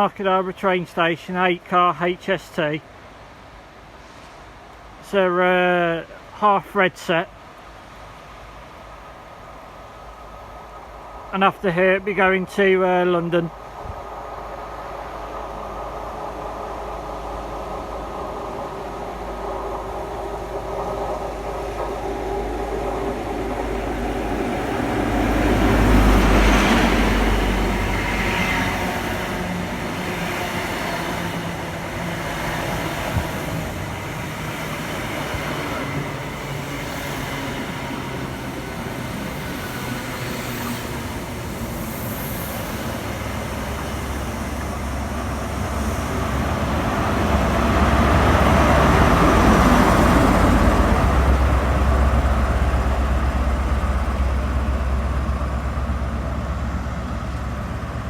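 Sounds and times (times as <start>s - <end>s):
train diesel engine running: 7.8s - 58.0s.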